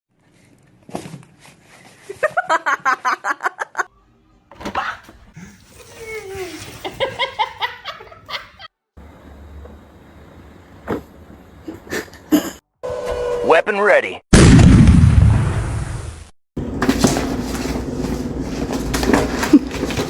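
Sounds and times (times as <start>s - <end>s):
people laughing: 2.2s - 3.9s, 6.8s - 8.7s.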